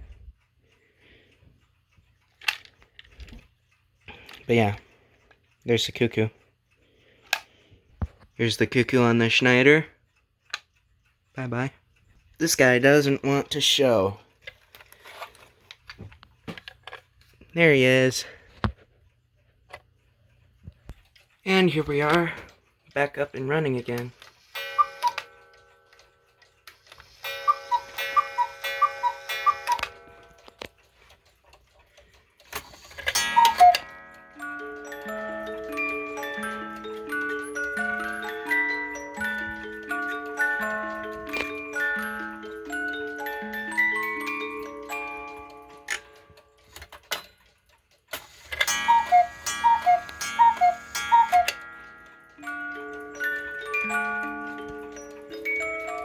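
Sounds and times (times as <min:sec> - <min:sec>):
music box playing a tune: 0:21.5 - 0:31.2, 0:32.4 - 0:56.0
cuckoo clock calls: 0:23.0 - 0:30.6, 0:32.5 - 0:46.4, 0:48.1 - 0:56.0
ringing clock strike: 0:24.4 - 0:26.4, 0:27.0 - 0:30.7, 0:33.0 - 0:46.4, 0:48.2 - 0:56.0.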